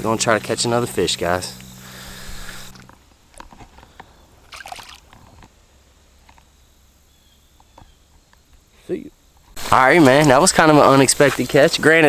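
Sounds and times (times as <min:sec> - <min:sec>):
creek water splashing: 0:00.0 - 0:02.8, 0:04.4 - 0:05.2, 0:09.6 - 0:12.0.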